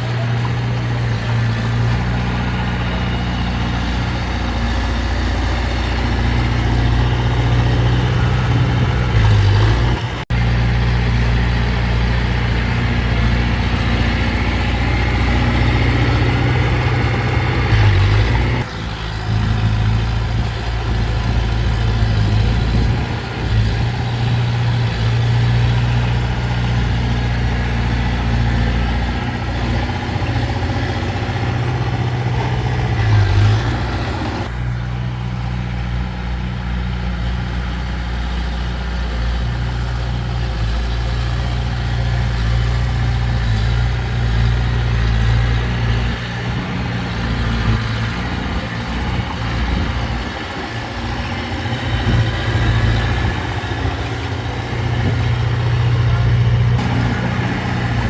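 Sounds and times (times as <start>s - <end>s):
heavy diesel engine running: 0.0s - 58.0s.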